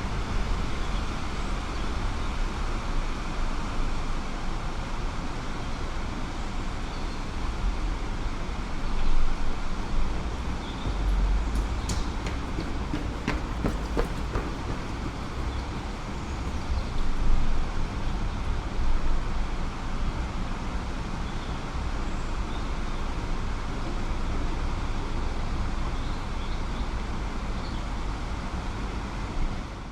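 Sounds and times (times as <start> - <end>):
distant road traffic rumble: 7.4 - 18.5.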